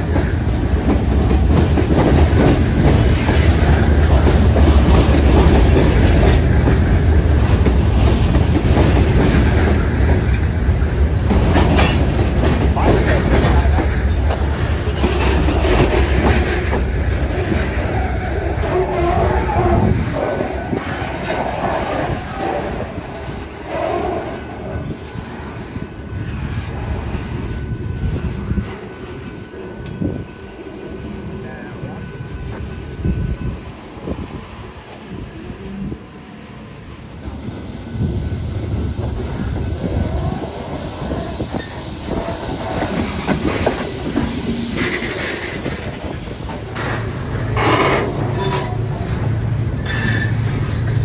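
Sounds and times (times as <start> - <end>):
train wheels rumbling on rails: 0.0 - 51.0.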